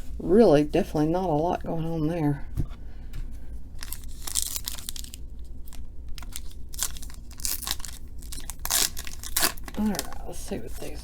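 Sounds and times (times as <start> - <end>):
foil pack crinkling and tearing: 3.8 - 11.0.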